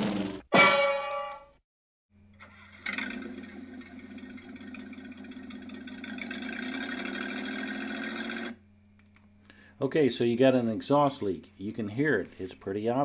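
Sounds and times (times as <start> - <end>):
car engine with exhaust leak: 2.4 - 8.6.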